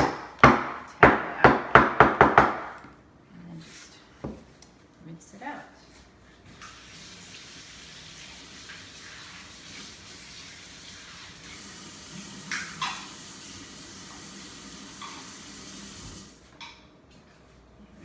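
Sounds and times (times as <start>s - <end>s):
kitchen tap running: 6.6s - 16.4s.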